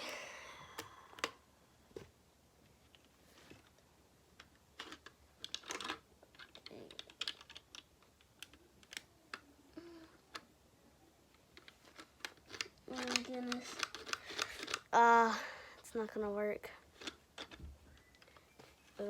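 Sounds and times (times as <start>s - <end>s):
plastic bricks clicking: 4.4s - 9.4s, 11.3s - 14.9s, 16.9s - 18.4s.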